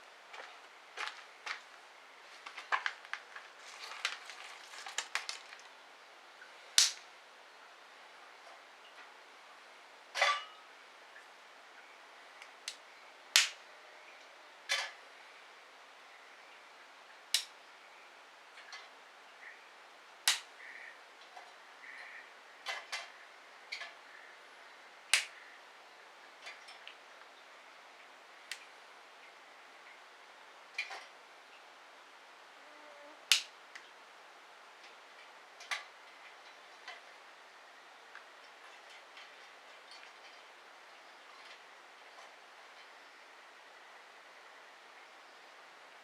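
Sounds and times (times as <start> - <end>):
faint hiss: 0.0 - 46.0
wood fire crackling: 0.3 - 5.8, 6.7 - 7.1, 12.6 - 13.6, 17.2 - 17.5, 20.2 - 20.8, 25.1 - 25.4, 33.3 - 33.8.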